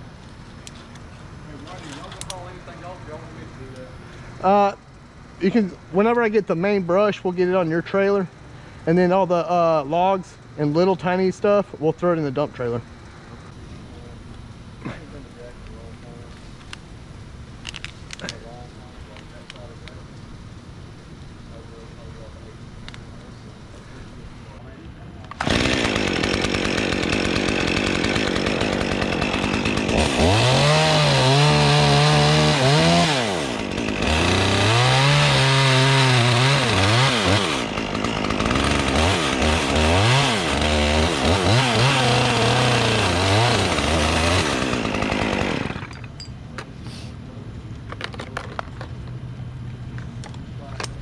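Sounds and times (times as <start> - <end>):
chainsaw revving while cutting: 25.4 - 45.9.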